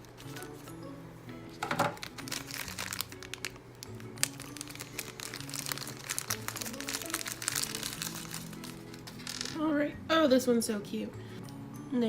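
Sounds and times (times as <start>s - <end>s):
background music: 0.0s - 12.0s
plastic packaging crinkling: 1.6s - 9.6s.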